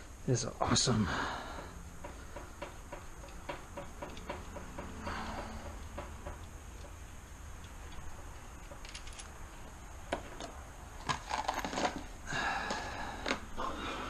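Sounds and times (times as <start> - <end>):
ratchet wrench clicking: 2.4 - 9.4.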